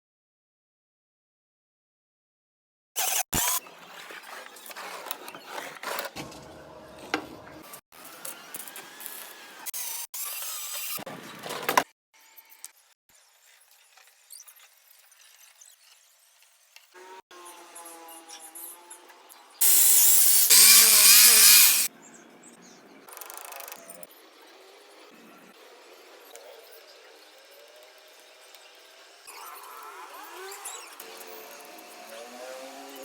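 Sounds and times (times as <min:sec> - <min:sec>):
metalworking tool squealing: 0:19.6 - 0:21.9.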